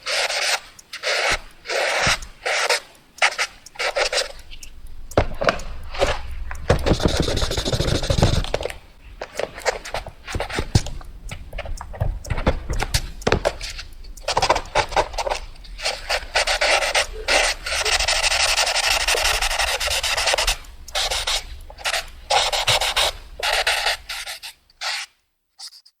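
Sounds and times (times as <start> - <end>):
pencil scribbling on paper: 5.2 - 8.7, 14.3 - 25.1.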